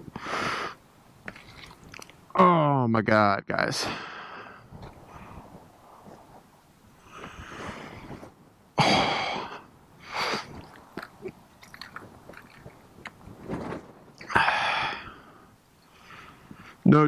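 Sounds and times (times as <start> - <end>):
person breathing heavily: 0.0 - 0.8, 3.8 - 6.3, 7.0 - 10.7, 14.2 - 16.8.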